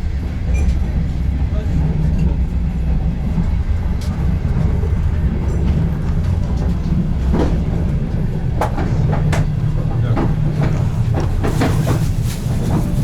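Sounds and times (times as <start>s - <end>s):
train carriage rumbling on track: 0.0s - 13.0s
wheels clacking over rail joints: 3.4s - 13.0s.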